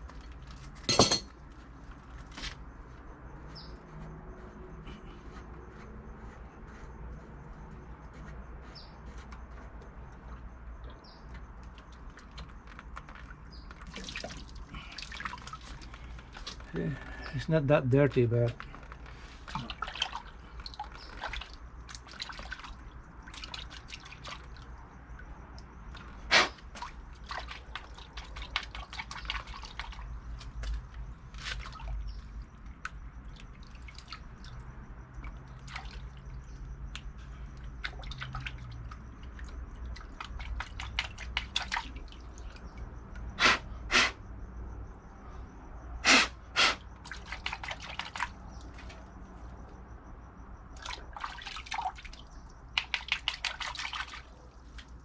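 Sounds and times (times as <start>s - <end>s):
water dripping and trickling: 0.0s - 0.8s, 9.8s - 17.4s, 18.1s - 43.4s, 46.8s - 55.0s.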